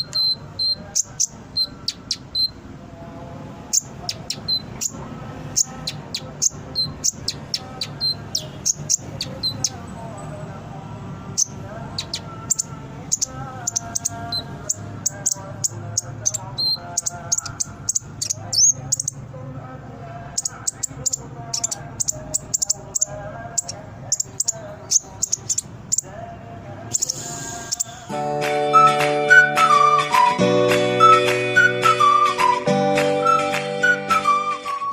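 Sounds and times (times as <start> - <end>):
sunbird song: 0.0 - 2.6, 3.6 - 10.5, 11.3 - 19.3, 20.2 - 29.8.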